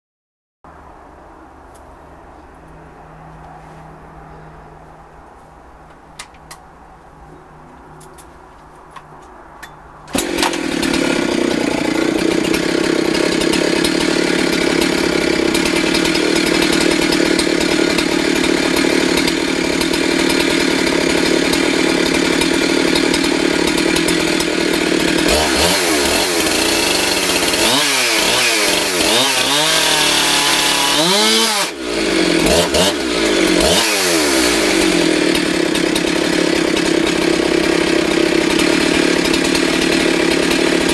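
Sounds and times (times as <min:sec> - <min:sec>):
chainsaw engine revving: 0:10.1 - 0:40.9.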